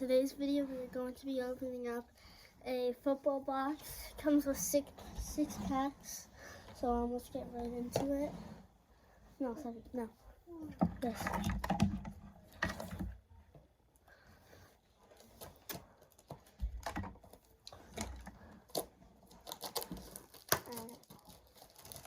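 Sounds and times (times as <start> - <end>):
card packs being handled: 17.2 - 22.0.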